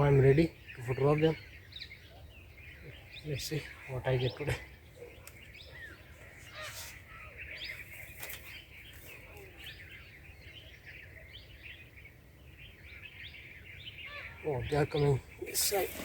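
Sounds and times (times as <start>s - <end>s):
small birds chirping: 0.0s - 16.0s
brief sharp rustles: 6.3s - 9.2s.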